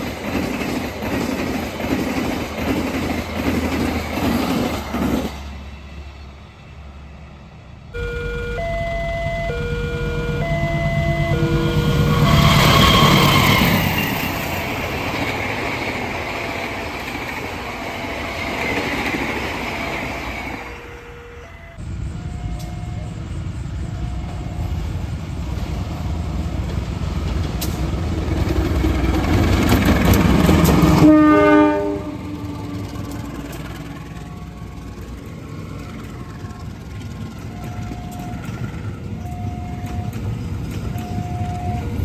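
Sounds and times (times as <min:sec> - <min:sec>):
train rumbling along track: 0:00.0 - 0:42.0
locomotive horn: 0:08.0 - 0:13.9, 0:20.6 - 0:23.2, 0:30.7 - 0:35.0.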